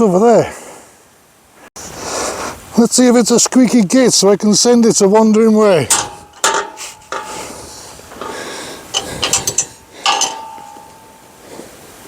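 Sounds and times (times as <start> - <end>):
gate latch rattling and clicking: 5.2 - 11.1
gate hinges creaking: 5.2 - 11.4.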